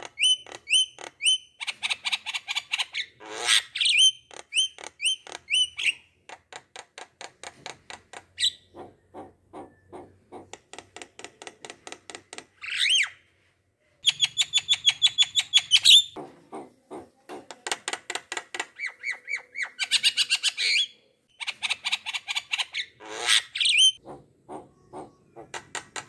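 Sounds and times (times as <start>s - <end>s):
bird calls: 8.4s - 10.6s, 18.8s - 26.0s.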